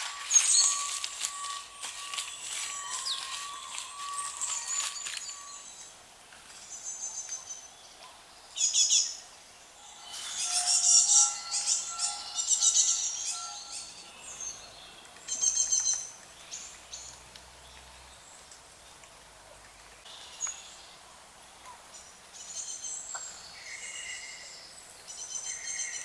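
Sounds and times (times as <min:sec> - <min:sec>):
low whistled bird notes: 0:00.0 - 0:05.9, 0:09.8 - 0:16.1
songbirds chirping and trilling: 0:00.0 - 0:26.0.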